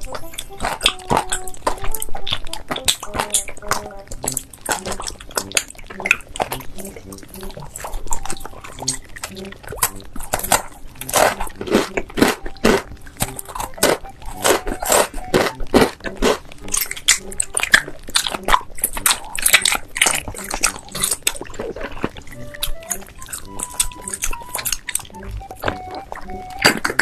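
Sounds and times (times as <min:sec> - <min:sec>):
loud crunchy chewing: 0:00.0 - 0:27.0
wet chewing: 0:00.0 - 0:27.0.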